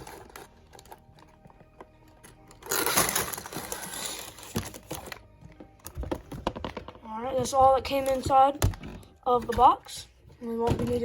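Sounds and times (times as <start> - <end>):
plastic bags rattling rustle: 0.0 - 5.2.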